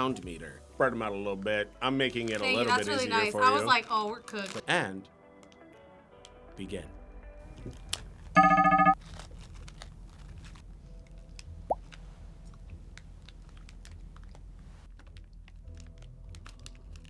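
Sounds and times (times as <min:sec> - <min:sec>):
chip bag crinkling: 0:09.0 - 0:10.6.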